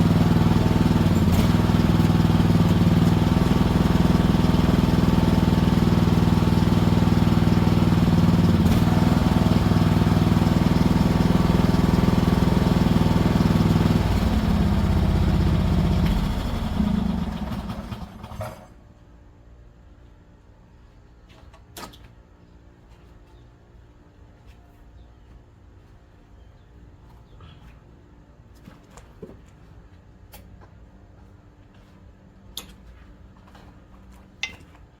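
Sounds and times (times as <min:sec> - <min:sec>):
engine knock as it dies: 0:00.0 - 0:18.7
excavator engine running: 0:00.0 - 0:18.7.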